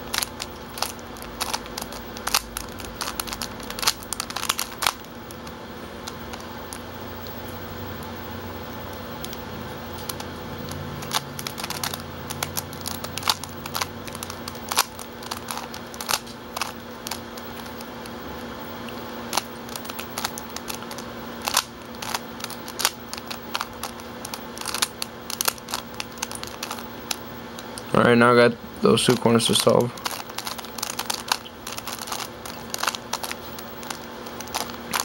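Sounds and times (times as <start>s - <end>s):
faint steady hum: 0.0s - 35.0s
puzzle cube layers clicking: 0.1s - 5.1s, 11.0s - 17.9s, 29.1s - 35.0s.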